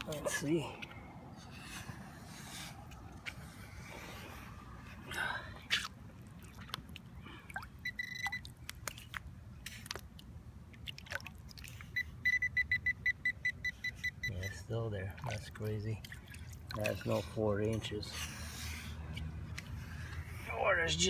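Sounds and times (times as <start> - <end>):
digging in wet sand: 0.0 - 21.0
metal detector beeping: 7.8 - 8.5, 12.0 - 14.7.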